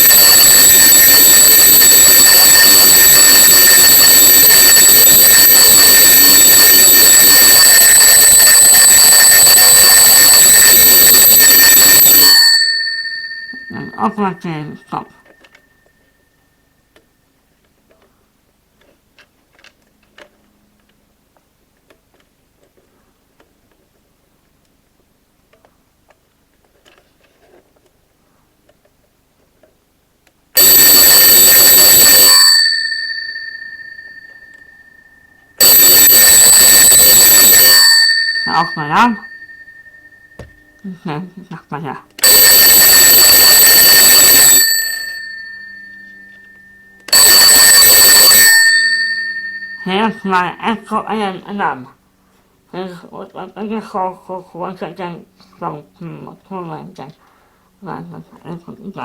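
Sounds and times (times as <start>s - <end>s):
alarm clock bells ringing: 0.0s - 15.6s, 30.6s - 40.4s, 42.2s - 51.0s.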